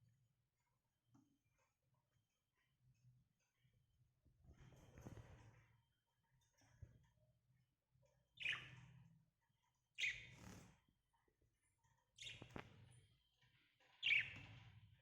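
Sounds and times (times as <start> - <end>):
parrots chirping: 8.4 - 8.7, 12.2 - 12.6, 14.0 - 14.5.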